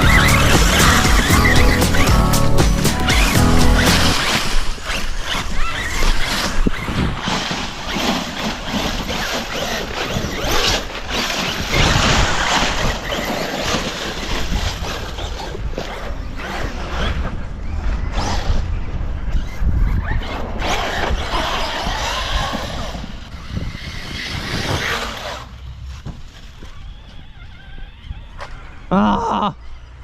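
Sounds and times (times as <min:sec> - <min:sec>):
background song: 0:00.0 - 0:04.3
toy car tyres scrabbling on gravel: 0:02.9 - 0:28.9.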